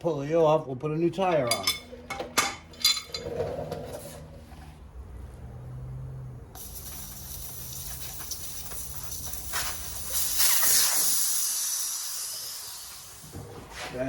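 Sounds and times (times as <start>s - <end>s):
compressed air hissing: 6.5s - 14.0s.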